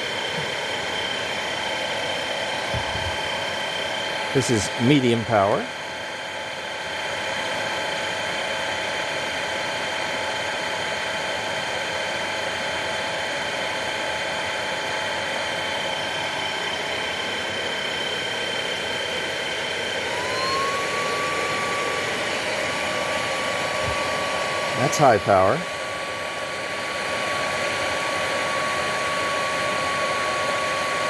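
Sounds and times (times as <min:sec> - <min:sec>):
stick vacuum motor whining: 0:19.9 - 0:25.6.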